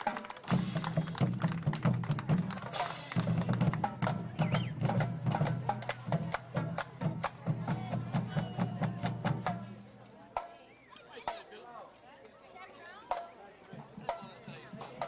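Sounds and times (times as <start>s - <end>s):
snare drum hits: 0.5s - 6.0s
low drum beat: 0.5s - 10.0s.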